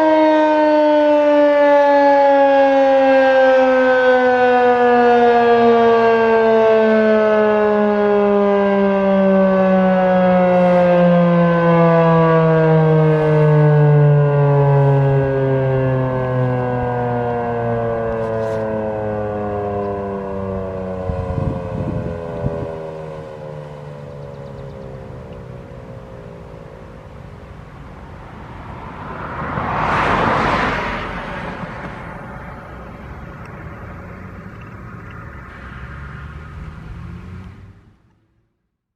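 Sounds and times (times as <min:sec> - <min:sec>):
siren winding down: 0:00.0 - 0:33.1
vehicle passing by: 0:09.4 - 0:38.5.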